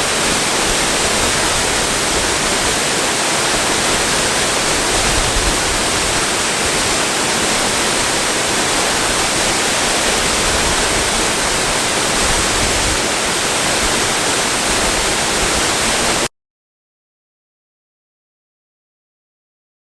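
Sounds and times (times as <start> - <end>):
waterfall rushing: 0.0 - 16.3.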